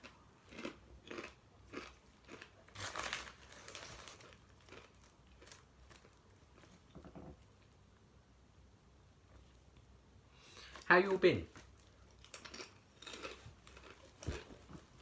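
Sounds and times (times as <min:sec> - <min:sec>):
crunching tortilla chips: 0:00.0 - 0:06.7, 0:11.6 - 0:15.0.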